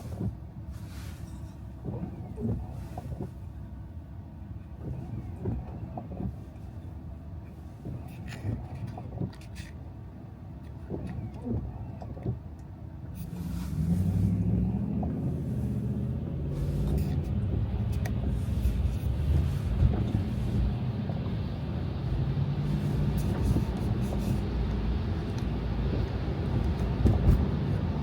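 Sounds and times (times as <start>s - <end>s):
car engine hum: 0.0s - 28.0s
tyre and road noise: 13.0s - 28.0s.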